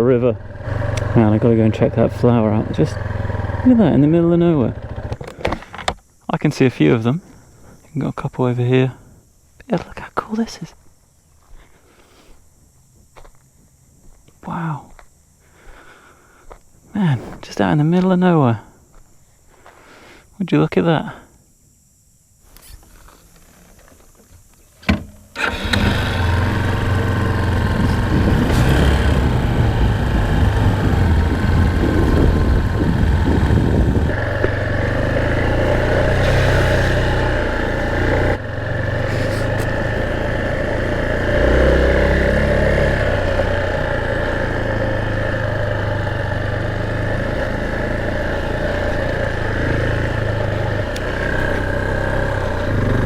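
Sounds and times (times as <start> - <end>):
motorbike engine revving: 0.0 - 5.8, 25.4 - 53.0.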